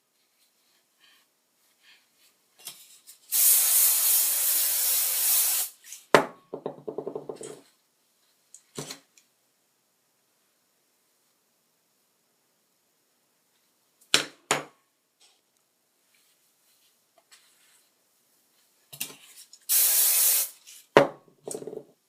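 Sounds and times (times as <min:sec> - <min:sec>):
aerosol can spraying: 0:03.3 - 0:05.8, 0:19.7 - 0:20.6.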